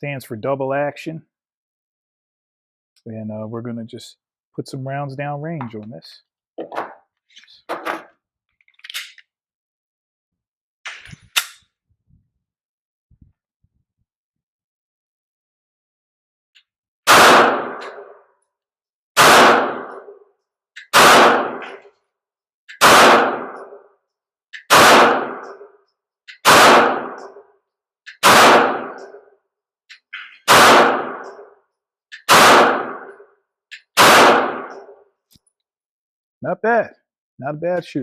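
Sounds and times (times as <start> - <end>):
pistol shots with echo: 17.1 - 18.2, 19.2 - 20.2, 20.9 - 21.9, 22.8 - 23.8, 24.6 - 25.7, 26.4 - 27.4, 28.2 - 29.2, 30.5 - 31.5, 32.3 - 33.2, 34.0 - 35.0.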